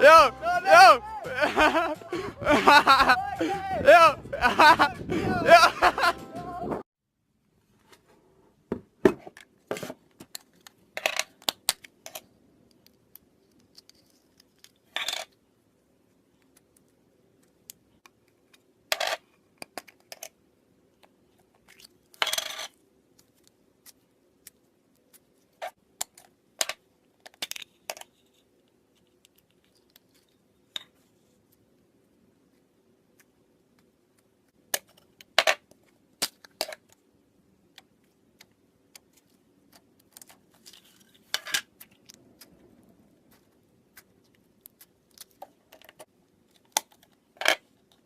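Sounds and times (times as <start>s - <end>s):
small objects clicking and tapping: 10.2s - 15.4s, 16.4s - 20.4s, 21.0s - 31.0s.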